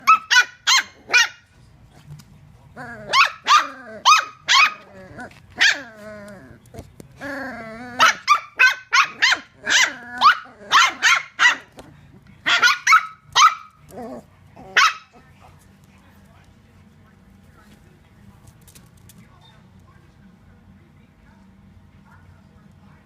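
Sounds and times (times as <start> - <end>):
dogs barking: 0.0 - 1.5, 3.0 - 6.3, 7.8 - 15.5
dogs growling and whining: 2.7 - 11.0, 13.8 - 15.4.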